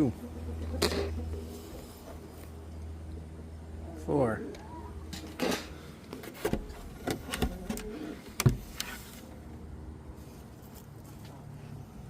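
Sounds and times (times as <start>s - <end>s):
steady low hum: 0.0s - 10.6s.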